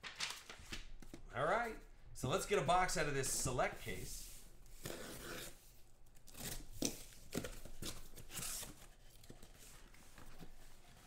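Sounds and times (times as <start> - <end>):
cardboard tearing: 6.2 - 9.5.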